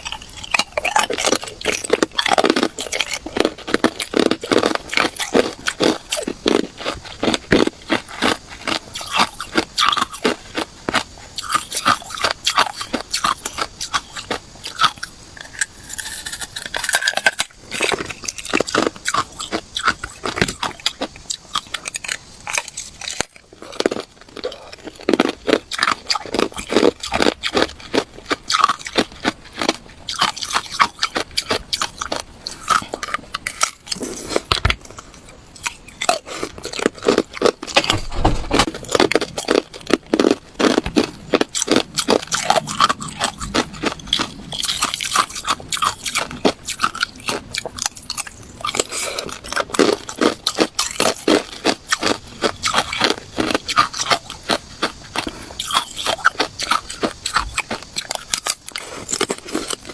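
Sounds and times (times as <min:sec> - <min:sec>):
person crunching ice: 0:00.0 - 0:59.9.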